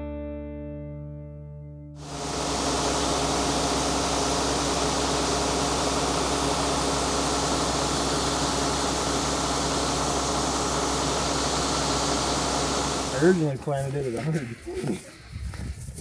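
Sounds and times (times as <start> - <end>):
combine harvester hum: 2.0 - 14.0.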